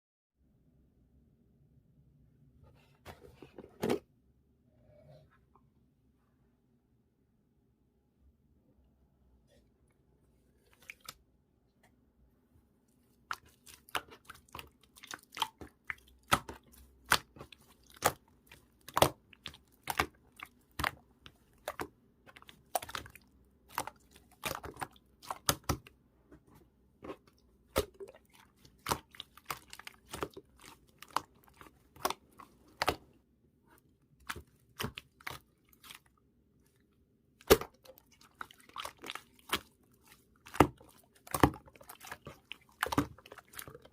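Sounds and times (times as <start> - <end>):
slime squelching and popping: 13.1 - 26.0, 27.0 - 33.1, 34.1 - 36.8, 37.4 - 43.9.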